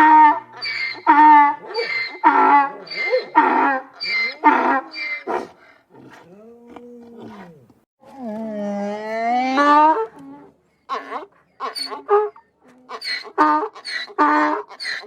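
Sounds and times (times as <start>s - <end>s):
donkey braying: 0.0s - 5.5s.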